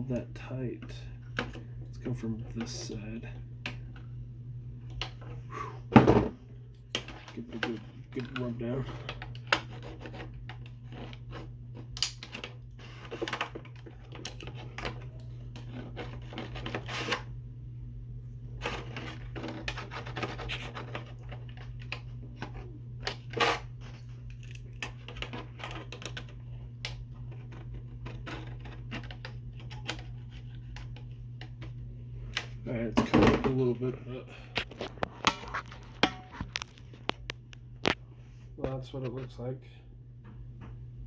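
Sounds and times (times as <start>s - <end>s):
low hum: 0.0s - 41.0s
sticker rubbing on plastic: 19.4s - 21.1s.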